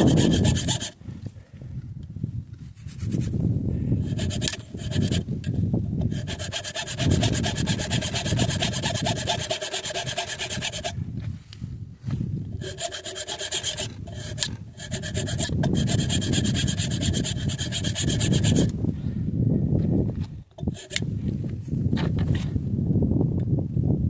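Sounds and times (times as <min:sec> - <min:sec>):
rapid rasping filing strokes: 0:00.0 - 0:01.0, 0:04.0 - 0:11.0, 0:12.6 - 0:18.7, 0:20.6 - 0:21.0.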